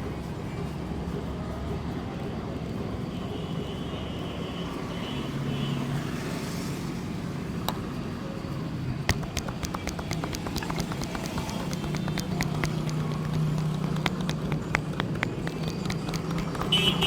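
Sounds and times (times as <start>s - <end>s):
street traffic noise: 0.0s - 17.0s
low vehicle engine hum: 7.8s - 17.0s
sharp clicks: 9.1s - 17.0s.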